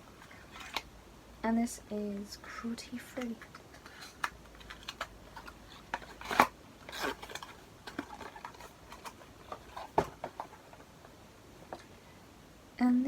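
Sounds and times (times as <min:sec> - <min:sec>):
packaging clicks and taps: 0:03.2 - 0:10.8.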